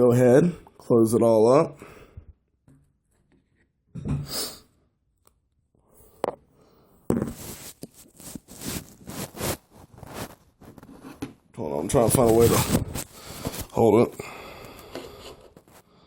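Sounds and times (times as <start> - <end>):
clicks and scrapes: 7.1 - 11.4.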